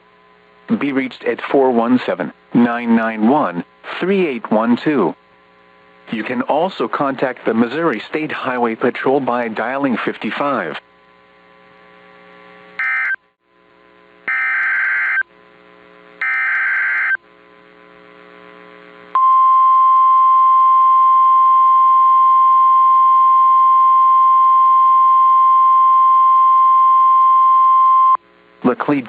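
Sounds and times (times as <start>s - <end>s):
screechy digital data tones: 14.3s - 15.2s, 16.2s - 17.2s.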